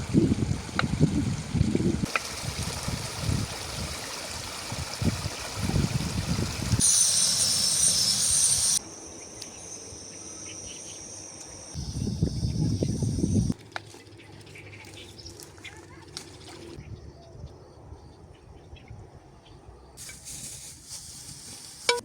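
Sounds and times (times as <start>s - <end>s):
stream water running: 0.0s - 8.8s, 14.8s - 16.8s
high-pitched insect chorus: 6.8s - 13.6s.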